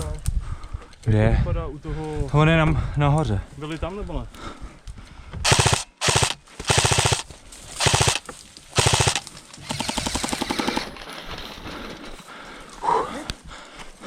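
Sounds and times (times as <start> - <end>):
airsoft guns firing bursts: 5.4 - 10.9.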